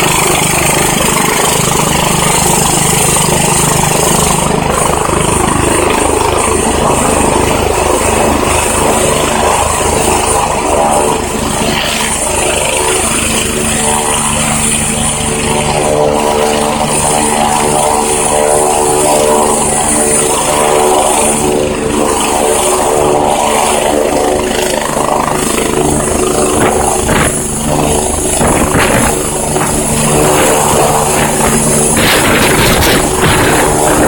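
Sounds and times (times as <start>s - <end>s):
helicopter rotor hum: 0.0s - 34.0s
high turbine whine: 0.0s - 34.0s
gusty rushing noise: 25.1s - 34.0s.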